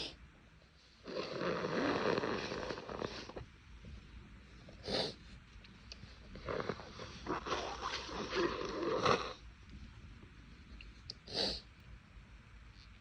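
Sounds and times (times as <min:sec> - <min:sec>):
person blowing nose: 0:01.1 - 0:03.4
person sniffing: 0:04.8 - 0:05.2, 0:11.3 - 0:11.7.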